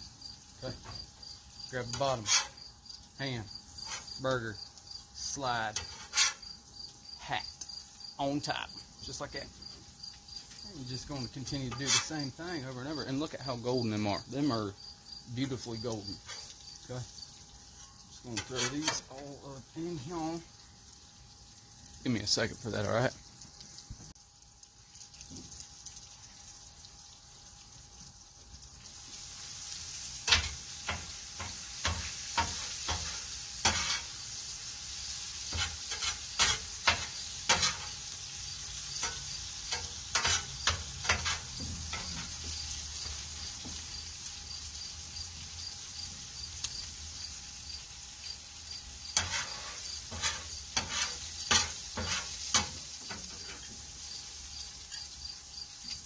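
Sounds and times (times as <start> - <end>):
food sizzling on griddle: 0.0 - 56.0
metal utensil scraping griddle: 1.8 - 4.4, 5.2 - 6.6, 10.9 - 14.1, 15.4 - 16.6, 17.7 - 19.4, 29.8 - 43.1, 49.0 - 53.9.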